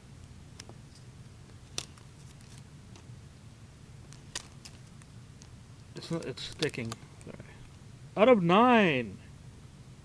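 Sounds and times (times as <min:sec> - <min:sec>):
low steady hum: 0:00.0 - 0:10.0
plastic clicks: 0:06.1 - 0:07.3.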